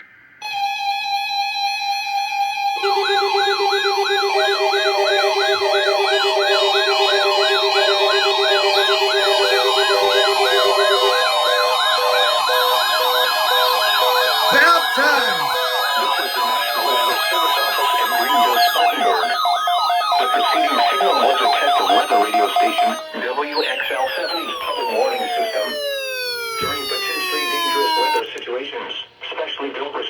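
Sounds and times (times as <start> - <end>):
siren-like warbles: 0.4 - 28.2
rapid pulsing beeps: 2.8 - 28.2.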